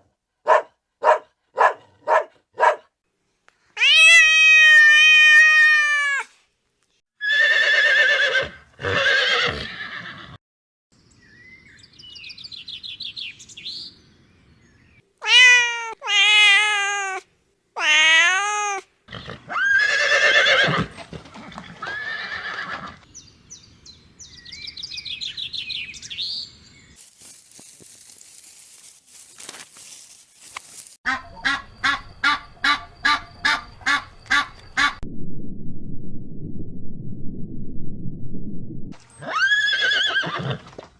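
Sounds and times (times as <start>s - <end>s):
cat meowing: 3.8s - 6.3s, 15.2s - 17.2s, 17.8s - 18.9s
horse whinnying: 7.2s - 10.4s, 19.1s - 20.9s, 21.6s - 23.0s, 39.2s - 40.7s
high bird chirping: 11.0s - 15.0s, 23.1s - 27.0s.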